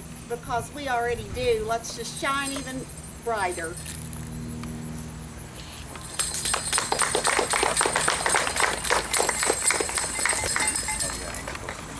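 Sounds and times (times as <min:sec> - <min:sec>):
crowd applauding: 0:06.3 - 0:11.9.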